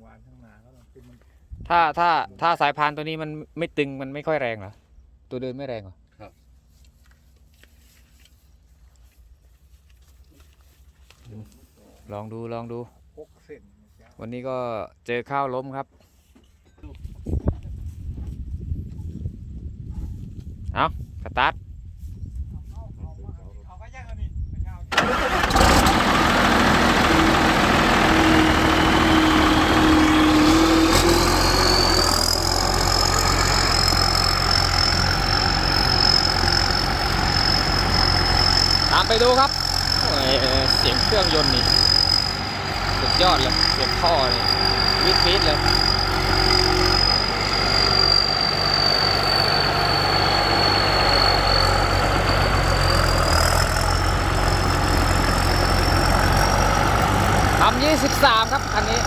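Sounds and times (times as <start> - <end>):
diesel engine running: 24.9 - 59.0
high engine whine: 24.9 - 59.0
high exhaust whistle: 25.0 - 59.0.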